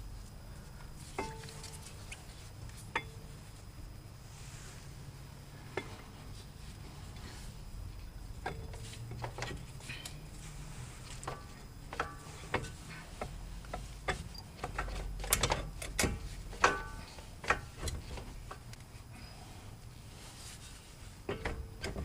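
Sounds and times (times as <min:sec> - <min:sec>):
low steady hum: 0:00.0 - 0:22.0
metal clinks of brake caliper: 0:08.4 - 0:10.3, 0:14.0 - 0:18.0.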